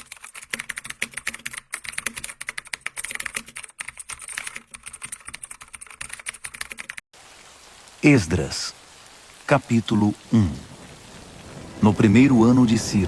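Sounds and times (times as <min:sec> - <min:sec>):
rapid typing on keyboard: 0:00.0 - 0:07.0.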